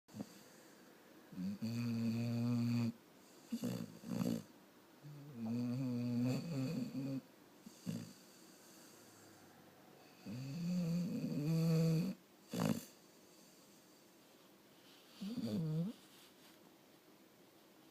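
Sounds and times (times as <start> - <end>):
person snoring: 10.0 - 13.0.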